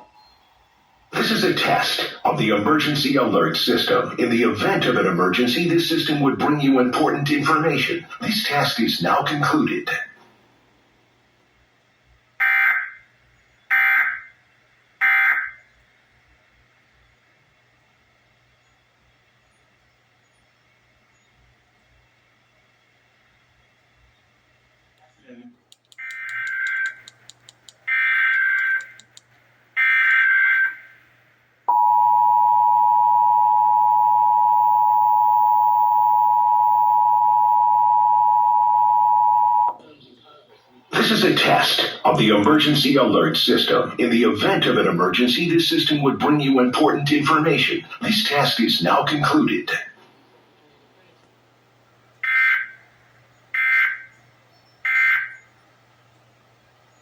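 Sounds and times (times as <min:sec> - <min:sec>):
two-tone attention signal: 0:31.7 - 0:39.8.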